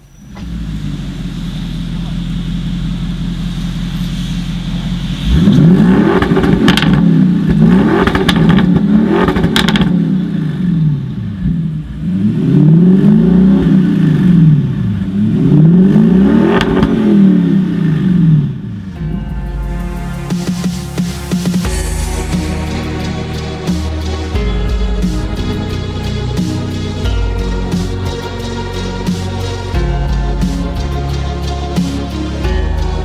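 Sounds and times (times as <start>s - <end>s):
exhaust cracks: 0.0s - 18.1s, 18.8s - 33.0s
car engine revving: 0.4s - 17.8s, 19.0s - 33.0s.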